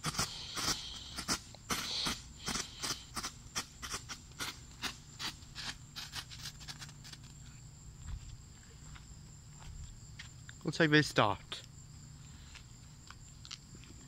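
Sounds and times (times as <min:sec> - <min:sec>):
fireworks popping: 0:00.0 - 0:07.4.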